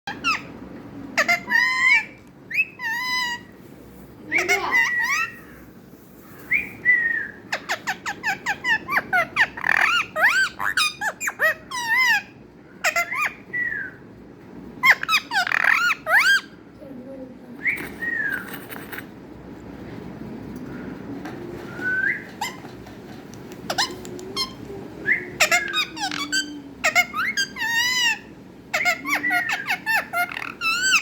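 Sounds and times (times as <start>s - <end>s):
parrot whistling and chirping: 1.2s - 3.5s, 4.4s - 5.4s, 6.5s - 14.1s, 14.8s - 16.6s, 23.7s - 31.0s.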